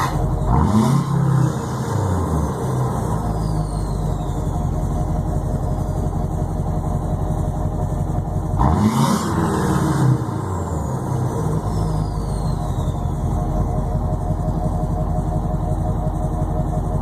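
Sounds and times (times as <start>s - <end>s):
diesel engine idling and revving: 0.0s - 17.0s
high turbo whistle: 11.4s - 13.4s.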